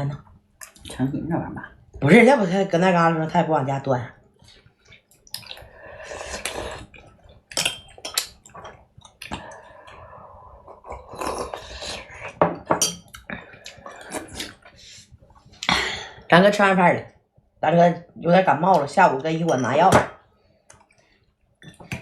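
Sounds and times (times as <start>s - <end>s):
dishes and utensils clinking: 7.5s - 8.8s, 12.4s - 13.2s, 21.6s - 22.0s.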